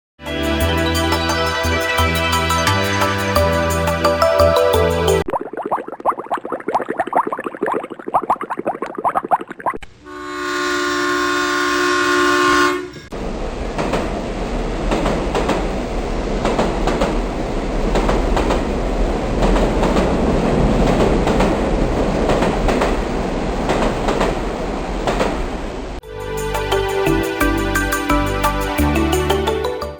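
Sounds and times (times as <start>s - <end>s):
music: 0.2s - 5.2s, 26.0s - 29.9s
water bubbling: 5.3s - 9.9s
train horn chord: 10.0s - 13.1s
train rumbling past: 12.2s - 26.8s
wheels clacking over rail joints: 13.2s - 25.6s.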